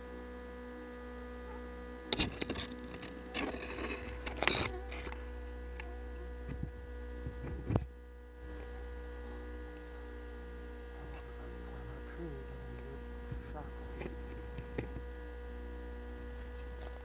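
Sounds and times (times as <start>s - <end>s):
electrical hum: 0.0s - 17.0s
thin whine: 0.0s - 17.0s.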